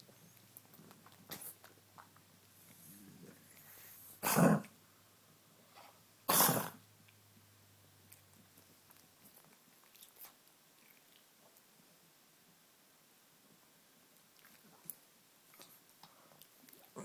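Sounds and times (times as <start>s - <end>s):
dog coughing: 4.2s - 4.7s, 6.3s - 6.8s.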